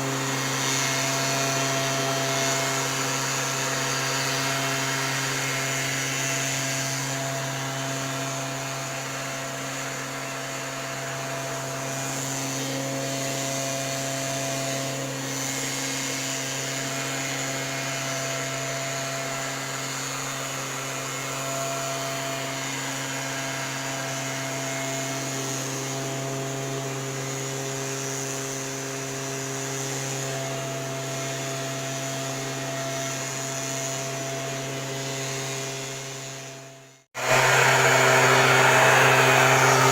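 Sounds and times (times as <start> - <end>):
blower air rushing: 37.2 - 39.9
two-stroke engine running: 37.2 - 39.9.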